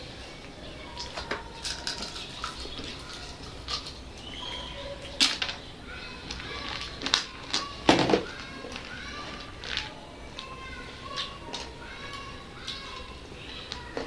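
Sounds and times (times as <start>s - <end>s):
faint high chirps: 0.0s - 6.8s
food crunching: 1.0s - 5.6s.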